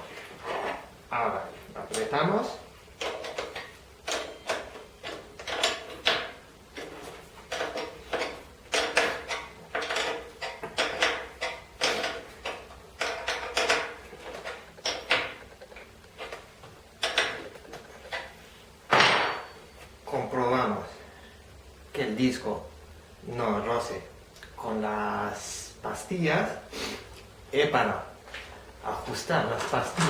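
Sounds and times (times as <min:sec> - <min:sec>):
wrench metallic clicks and scrapes: 0:03.0 - 0:18.3.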